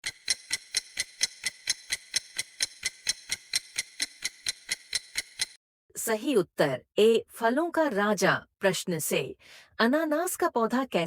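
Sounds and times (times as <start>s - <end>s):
clock ticking countdown: 0.0s - 5.6s.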